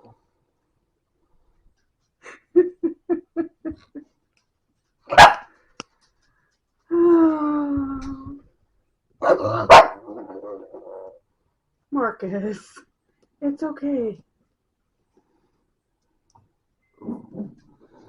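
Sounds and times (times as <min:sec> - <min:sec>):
dog barking: 0:05.1 - 0:05.5, 0:09.2 - 0:10.1.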